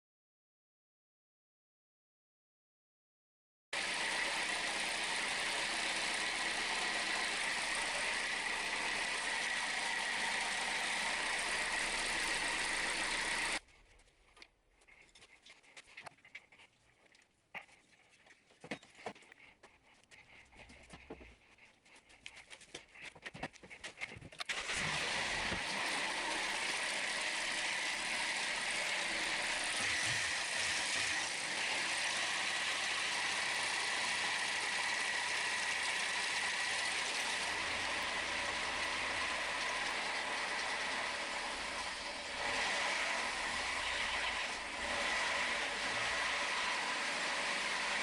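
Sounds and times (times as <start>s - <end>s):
car engine starting and running: 3.8s - 13.6s, 24.5s - 48.0s.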